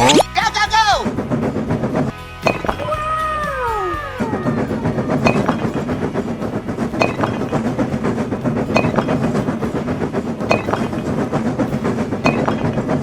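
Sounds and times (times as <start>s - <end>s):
train rumble: 3.4s - 13.0s
wheels clacking over rail joints: 4.6s - 13.0s.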